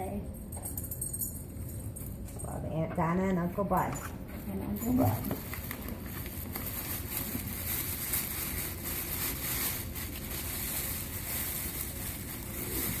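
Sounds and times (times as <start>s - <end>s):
paper and packing material rustling: 4.2s - 13.0s.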